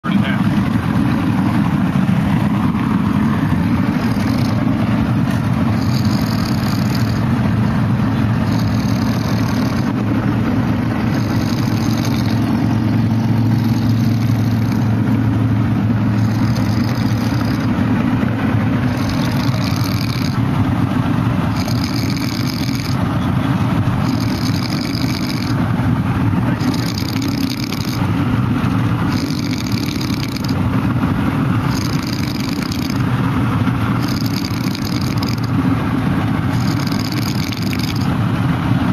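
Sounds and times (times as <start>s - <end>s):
low rumble of moving vehicle: 0.0s - 38.9s
man snoring: 3.5s - 7.3s, 8.2s - 10.1s, 11.0s - 15.0s, 16.1s - 17.8s, 18.8s - 20.4s, 21.5s - 23.0s, 24.0s - 25.6s, 26.5s - 28.1s, 29.1s - 30.6s, 31.7s - 33.0s, 34.0s - 35.6s, 36.5s - 38.1s.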